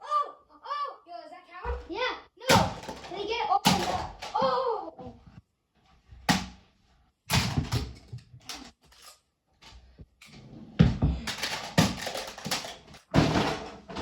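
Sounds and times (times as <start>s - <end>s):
plastic tiles clattering: 2.5s - 4.4s, 7.3s - 9.2s, 11.2s - 14.0s.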